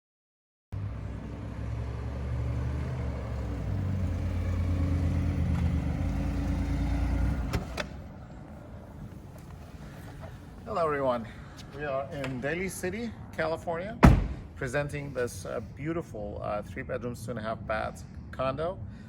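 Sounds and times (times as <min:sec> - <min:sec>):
engine humming: 0:00.8 - 0:10.7.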